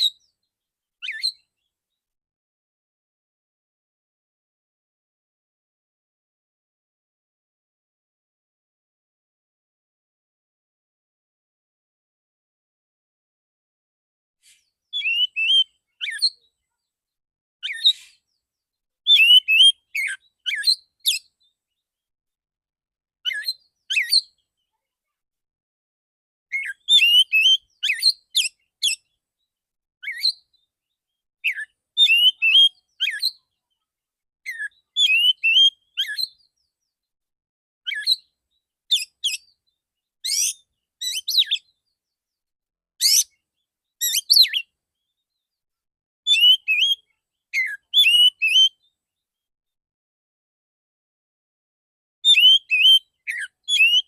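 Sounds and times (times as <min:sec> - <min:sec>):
bird singing whistled notes: 0:00.0 - 0:00.4, 0:01.0 - 0:01.6, 0:14.5 - 0:16.6, 0:17.6 - 0:18.4, 0:19.1 - 0:21.6, 0:23.3 - 0:24.5, 0:26.5 - 0:29.2, 0:30.0 - 0:30.7, 0:31.4 - 0:33.7, 0:34.5 - 0:37.0, 0:37.9 - 0:42.2, 0:43.0 - 0:45.4, 0:46.3 - 0:49.0, 0:52.2 - 0:54.0.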